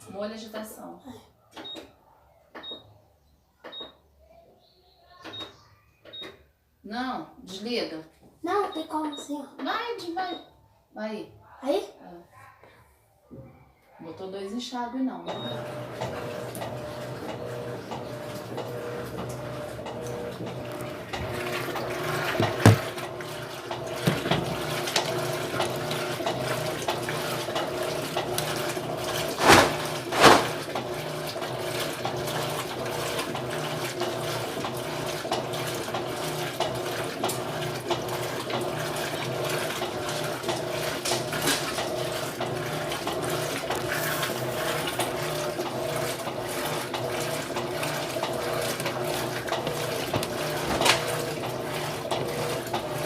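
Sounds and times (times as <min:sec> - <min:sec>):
water pouring into washing machine: 0:15.3 - 0:53.0.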